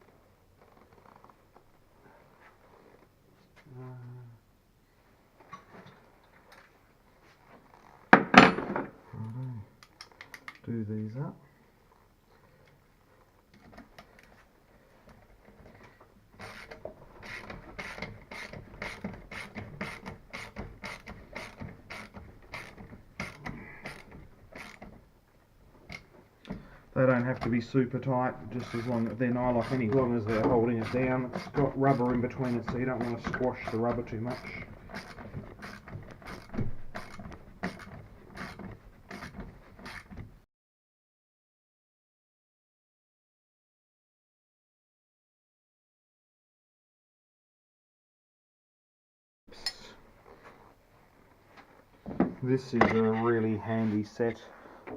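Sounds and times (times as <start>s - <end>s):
hand ratchet clicking: 16.4s - 24.9s, 28.4s - 40.2s.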